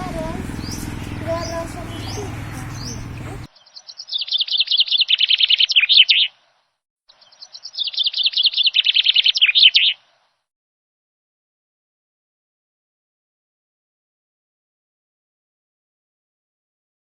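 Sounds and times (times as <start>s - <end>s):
bird twittering trill: 0.0s - 6.5s, 7.1s - 10.3s.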